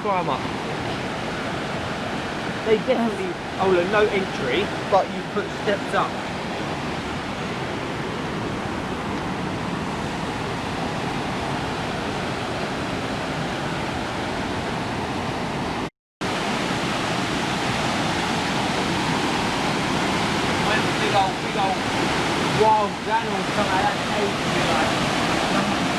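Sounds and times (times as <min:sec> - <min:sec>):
river water rushing: 0:00.0 - 0:25.9.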